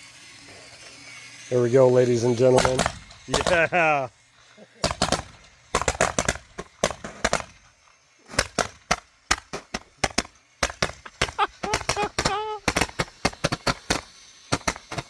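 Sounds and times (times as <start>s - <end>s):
firework popping rapidly: 2.5s - 4.1s, 4.8s - 15.0s.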